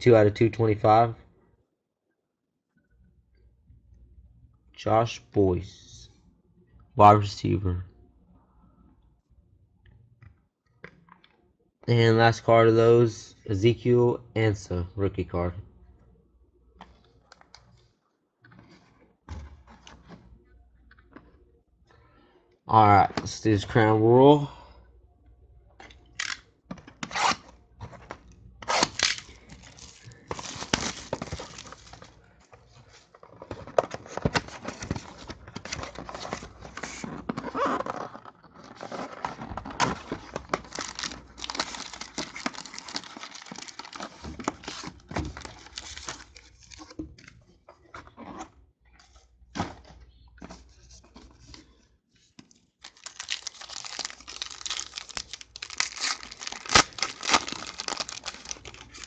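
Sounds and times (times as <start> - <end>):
packaging tearing and rustling: 28.6 - 32.2, 33.2 - 47.0, 52.8 - 59.0.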